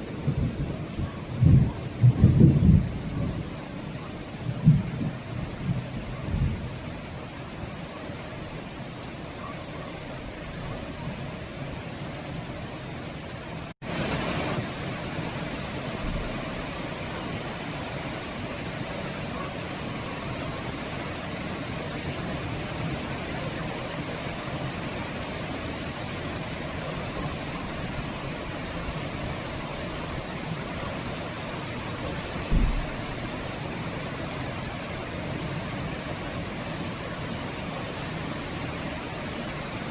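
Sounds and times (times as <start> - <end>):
heavy rain hissing: 0.0 - 39.9
low thump: 32.5 - 32.9.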